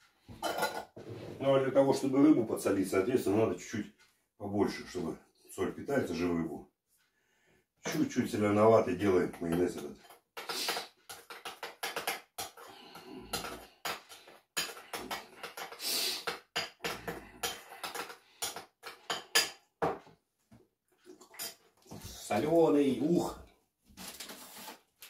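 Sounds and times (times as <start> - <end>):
spoon scraping a bowl: 10.0 - 19.5.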